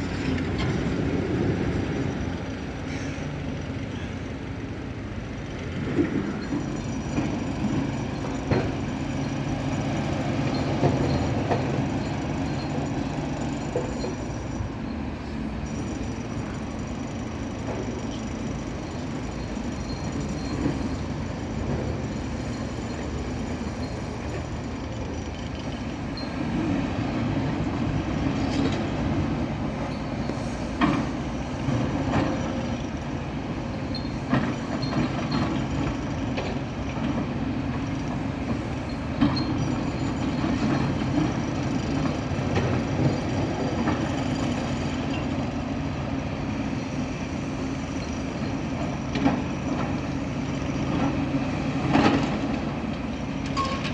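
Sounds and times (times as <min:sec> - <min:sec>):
heavy excavators running: 0:00.0 - 0:53.9
metallic knocks and clanks: 0:53.4 - 0:53.9.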